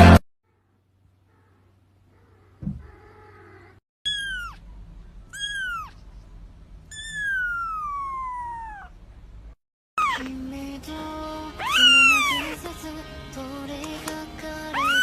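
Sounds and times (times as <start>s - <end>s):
kitten meowing: 4.1s - 4.6s, 5.3s - 6.0s, 6.9s - 9.0s, 10.0s - 10.3s, 11.6s - 12.6s, 14.7s - 15.0s.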